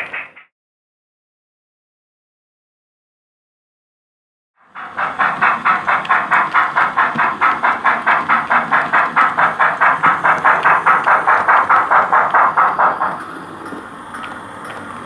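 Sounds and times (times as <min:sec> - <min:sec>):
steam locomotive exhaust chuffs: 0:00.0 - 0:00.4, 0:04.6 - 0:15.0.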